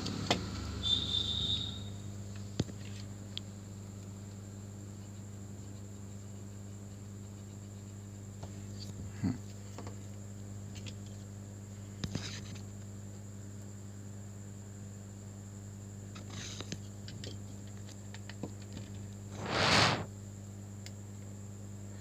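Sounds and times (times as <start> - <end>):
electrical hum: 0.0 - 22.0
thin high whine: 19.3 - 20.1.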